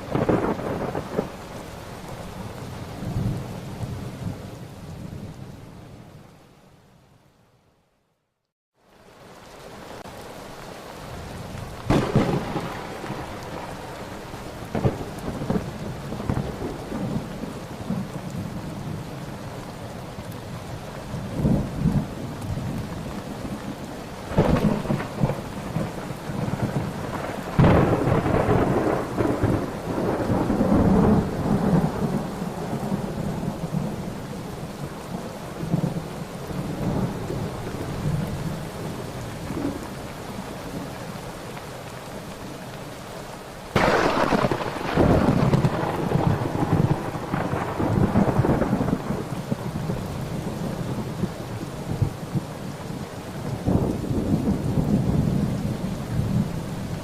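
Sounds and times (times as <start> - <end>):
thunder claps and rumble: 0.0 - 1.5, 11.2 - 19.0, 21.2 - 34.4, 43.8 - 52.5, 53.4 - 56.7
steady rain: 0.0 - 57.0.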